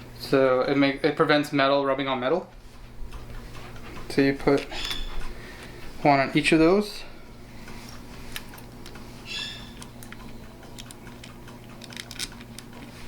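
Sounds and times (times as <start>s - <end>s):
steady low hum: 0.0s - 13.0s
short squeak: 4.7s - 5.2s
plastic washers clicking: 9.8s - 12.9s.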